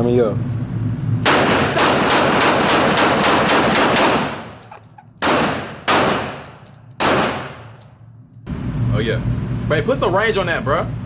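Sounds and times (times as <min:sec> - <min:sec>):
semi-automatic gunfire: 0:01.2 - 0:04.6, 0:05.2 - 0:07.8.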